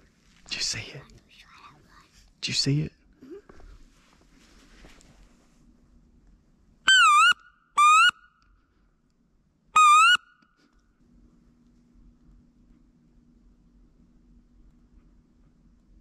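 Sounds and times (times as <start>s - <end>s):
squealing duck calls: 6.9s - 8.2s, 9.8s - 10.2s.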